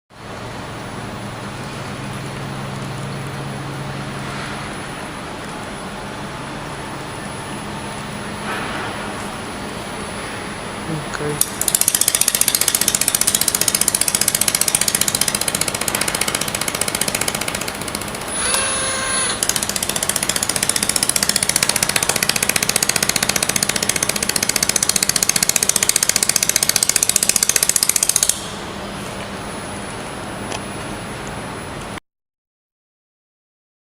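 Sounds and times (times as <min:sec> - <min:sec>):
steady machine hum: 0:00.2 - 0:32.0
laser pulse ticks: 0:18.3 - 0:19.7.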